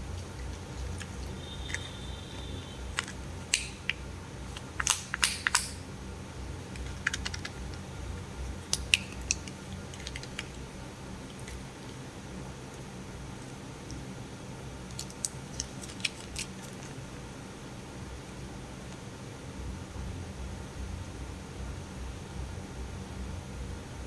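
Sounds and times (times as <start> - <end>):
steady low hum: 0.0 - 24.0
plastic capsule clicks and crackles: 0.3 - 5.8, 6.7 - 7.9, 8.5 - 10.6, 14.9 - 16.9
plastic snaps: 2.9 - 5.9, 6.7 - 7.8, 8.6 - 10.6.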